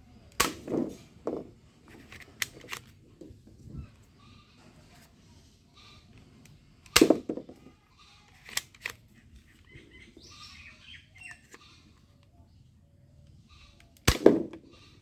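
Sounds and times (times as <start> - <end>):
plastic clicks of toy gun: 0.3 - 0.9, 1.9 - 3.0, 6.4 - 7.4, 8.3 - 9.1, 13.8 - 14.6.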